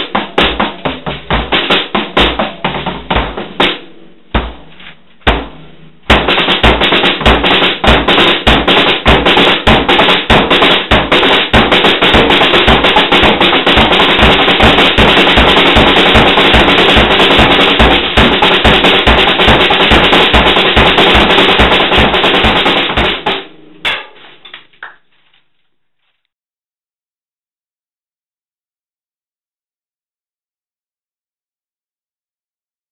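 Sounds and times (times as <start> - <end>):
snare drum hits: 0.0 - 3.8, 5.3 - 24.4
kick drum: 0.0 - 23.4.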